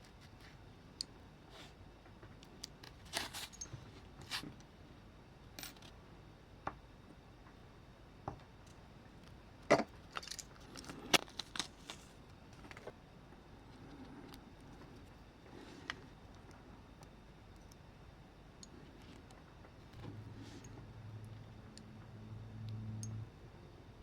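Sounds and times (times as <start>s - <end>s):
small metal parts clinking: 10.1s - 11.0s.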